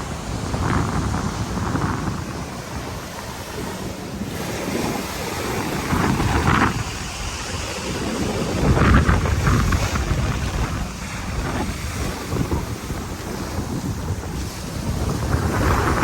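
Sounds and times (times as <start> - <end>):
small surf washing onto beach: 0.0 - 16.0
wind rumbling on microphone: 0.0 - 16.0.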